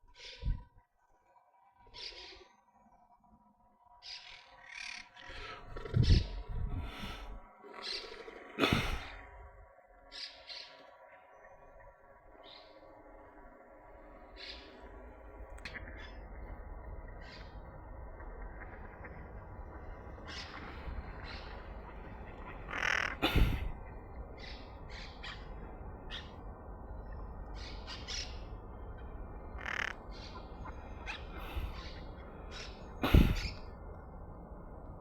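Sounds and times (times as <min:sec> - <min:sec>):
low rumble: 0:05.3 - 0:07.5
parrots squawking: 0:22.5 - 0:23.6, 0:29.5 - 0:33.6.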